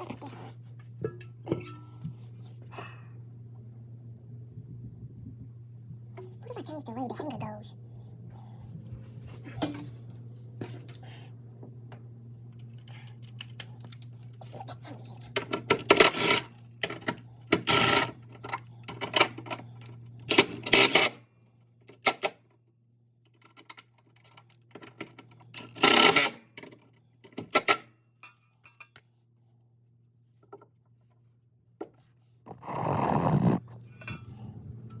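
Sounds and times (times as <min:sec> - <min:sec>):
low steady hum: 0:00.0 - 0:25.7, 0:28.0 - 0:35.0
metal exhaust pipes clanking: 0:01.0 - 0:02.2.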